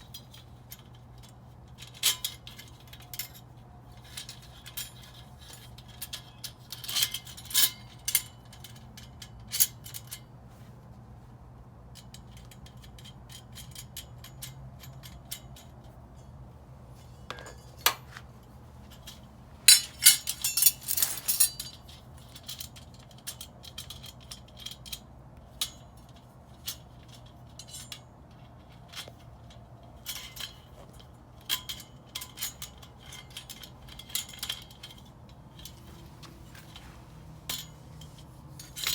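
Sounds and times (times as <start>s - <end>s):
steady low hum: 6.8s - 22.9s, 28.9s - 38.9s
dish rack parts clinking: 19.0s - 21.9s, 33.1s - 38.9s.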